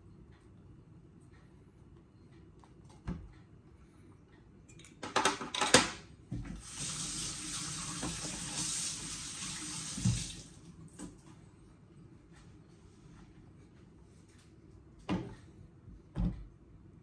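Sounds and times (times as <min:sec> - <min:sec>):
tap water running into sink: 0:06.6 - 0:10.6.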